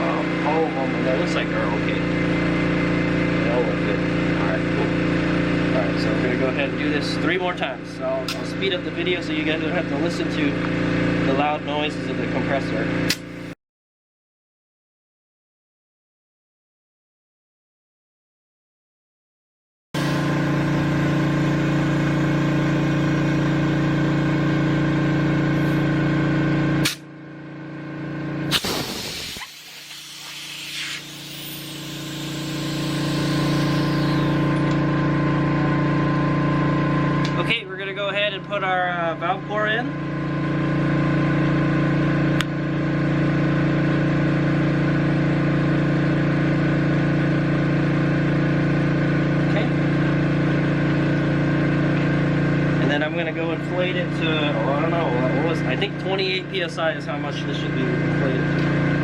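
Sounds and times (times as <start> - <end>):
electric air compressor running: 0.0 - 13.6, 20.0 - 37.6, 38.8 - 59.0
sharp click: 8.2 - 8.5, 13.1 - 13.5, 26.8 - 27.0, 28.5 - 29.6
compressor switch click: 13.1 - 13.5, 28.5 - 34.9.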